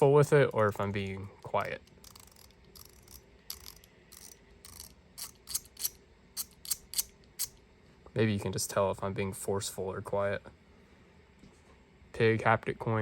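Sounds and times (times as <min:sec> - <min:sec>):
magnetic fidget clicking: 0:01.5 - 0:07.6.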